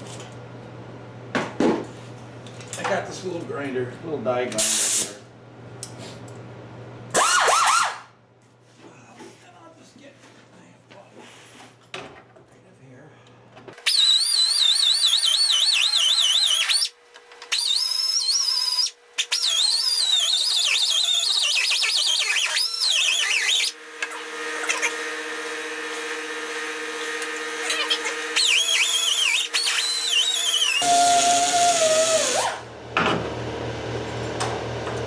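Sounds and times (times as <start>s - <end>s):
die grinder grinding steel: 13.8s - 32.6s.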